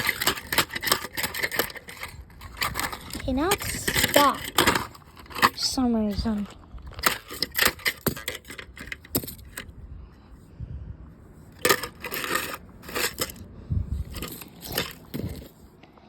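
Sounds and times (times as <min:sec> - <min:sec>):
plastic clock rattling and clicking: 0:00.0 - 0:09.7, 0:11.6 - 0:13.4.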